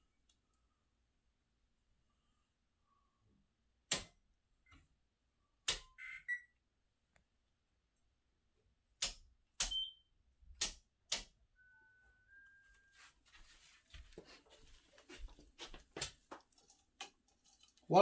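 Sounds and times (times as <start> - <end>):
sharp clicks: 10.6 - 11.3
faint high tone: 11.6 - 13.1.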